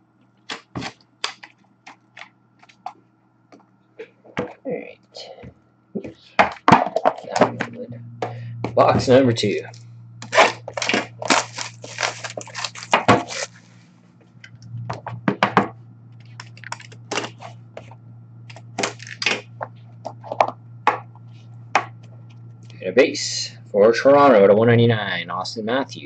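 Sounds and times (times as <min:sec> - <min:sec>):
cards clicking and tapping: 0:00.5 - 0:02.9
packaging crackling and ripping: 0:00.5 - 0:02.9, 0:10.2 - 0:13.6, 0:16.2 - 0:17.6, 0:18.5 - 0:19.4
low hum: 0:01.8 - 0:26.0.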